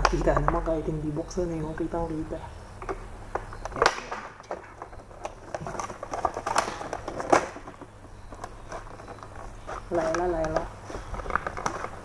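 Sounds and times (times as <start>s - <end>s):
packaging clicks and rustles: 2.8s - 12.0s.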